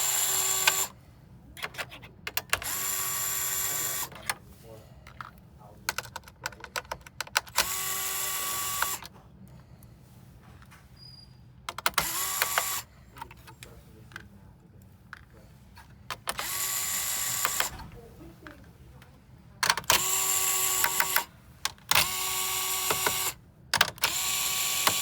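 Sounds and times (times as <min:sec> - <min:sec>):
electric screwdriver running: 0:00.0 - 0:00.9, 0:02.6 - 0:04.1, 0:07.5 - 0:09.0, 0:11.9 - 0:12.9, 0:16.3 - 0:17.8, 0:19.8 - 0:21.3, 0:21.9 - 0:25.0
handling clicks and taps: 0:05.0 - 0:07.6.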